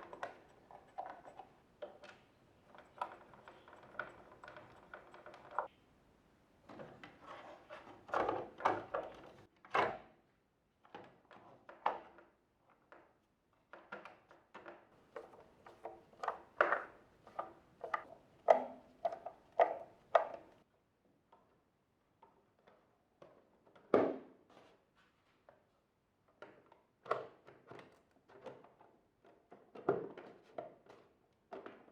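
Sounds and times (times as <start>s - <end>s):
plastic parts clicking and knocking: 0.0s - 5.7s, 10.8s - 20.6s.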